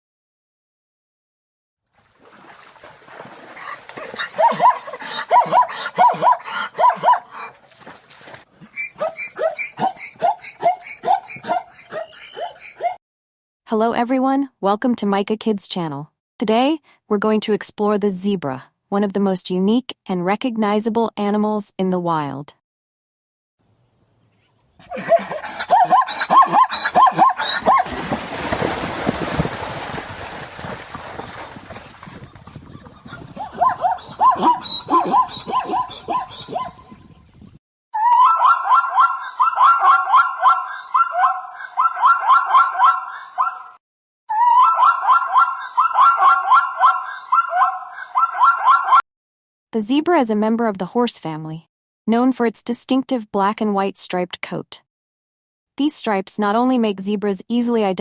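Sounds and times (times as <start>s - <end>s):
zebra barking calls: 8.7s - 13.0s, 24.8s - 27.9s, 33.0s - 36.8s.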